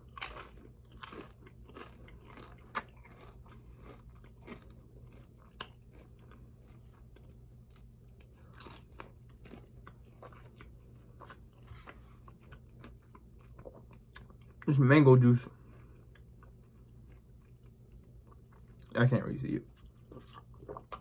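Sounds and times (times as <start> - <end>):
chewing and crunching chips: 0.0 - 19.0, 19.7 - 21.0.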